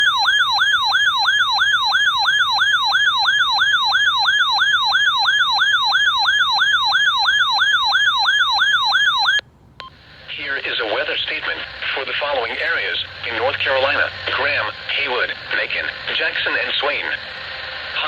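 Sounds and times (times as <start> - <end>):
electronic alert siren: 0.0 - 9.4.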